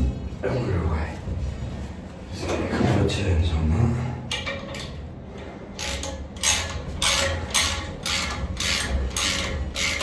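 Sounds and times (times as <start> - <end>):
ratchet wrench clicking: 5.8 - 10.0.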